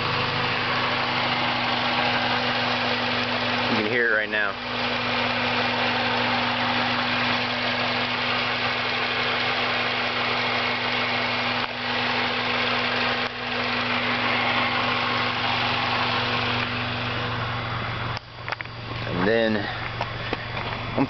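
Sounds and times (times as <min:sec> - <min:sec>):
car engine running: 0:00.0 - 0:21.0
engine ticking: 0:00.0 - 0:21.0.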